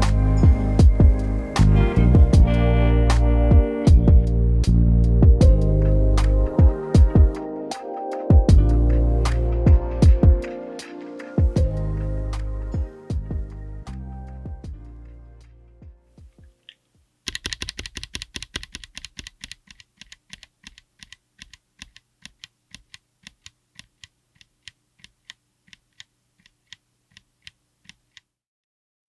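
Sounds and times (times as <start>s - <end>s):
music: 0.0s - 16.4s
mechanical keyboard typing: 17.3s - 28.3s.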